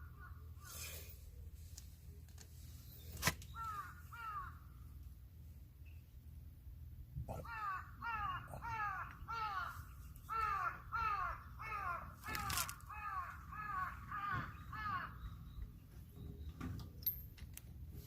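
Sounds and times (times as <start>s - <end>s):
crow cawing: 3.6s - 4.7s, 7.3s - 15.3s.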